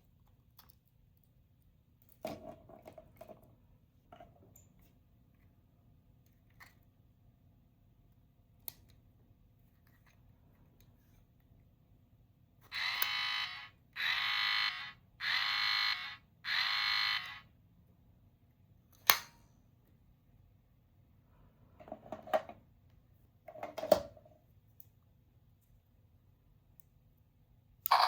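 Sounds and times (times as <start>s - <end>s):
electronic toy buzzer tone: 12.7s - 17.5s.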